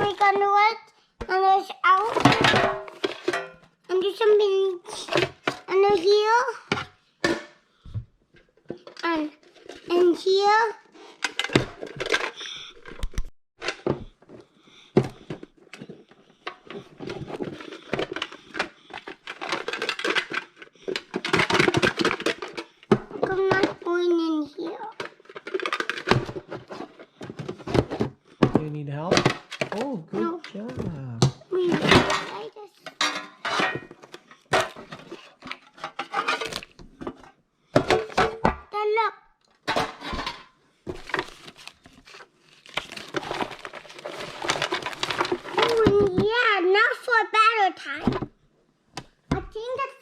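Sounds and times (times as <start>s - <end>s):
plastic toy pieces clattering: 11.2s - 13.8s, 15.8s - 28.0s, 31.6s - 36.8s, 39.6s - 46.4s.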